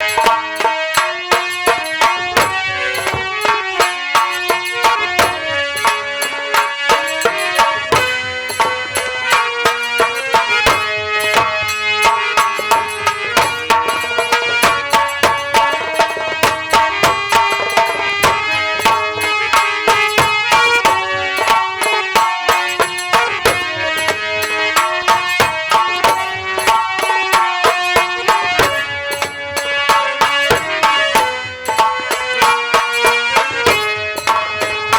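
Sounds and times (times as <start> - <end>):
fast hand-drum strokes: 0.0 - 34.9
pitched instrument melody: 0.0 - 34.9.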